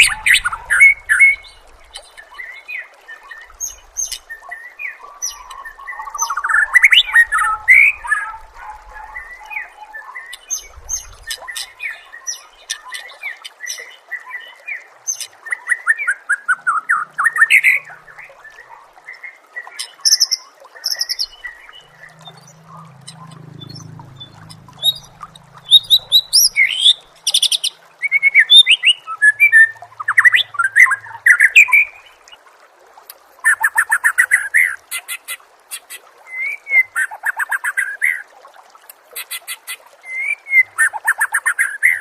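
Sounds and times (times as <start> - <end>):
songbird chirps and trills: 0.0 - 32.4.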